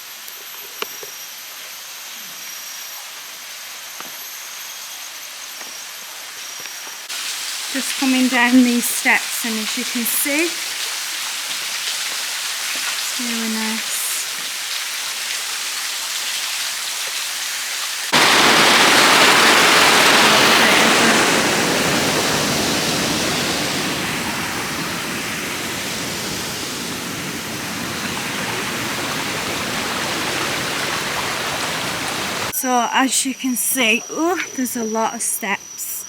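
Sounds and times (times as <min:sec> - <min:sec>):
waterfall rushing: 0:07.1 - 0:15.4, 0:17.6 - 0:32.5.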